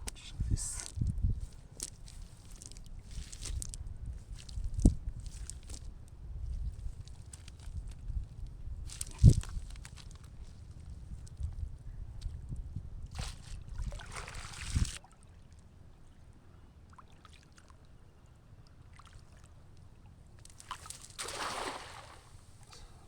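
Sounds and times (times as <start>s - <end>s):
pond water splashing: 13.8s - 15.1s, 20.6s - 22.9s.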